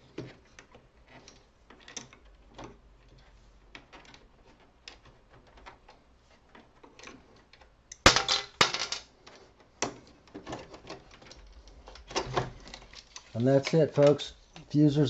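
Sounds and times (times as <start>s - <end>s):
loud plastic clatter: 8.1s - 9.1s.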